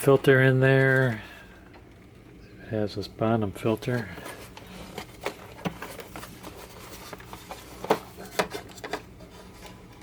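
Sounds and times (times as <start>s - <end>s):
faint steady hum: 0.0s - 10.0s
plastic parts clicking and knocking: 4.3s - 9.2s.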